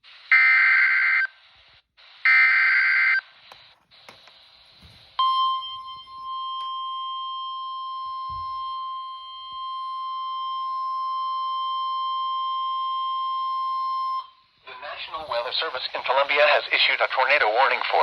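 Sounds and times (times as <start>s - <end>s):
steady alarm tone: 5.2s - 14.5s.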